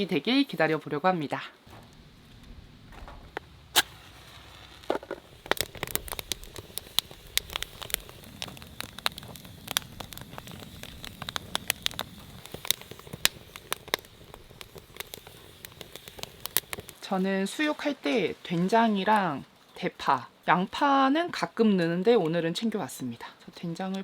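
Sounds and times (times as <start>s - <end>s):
wood fire crackling and popping: 1.6s - 20.8s.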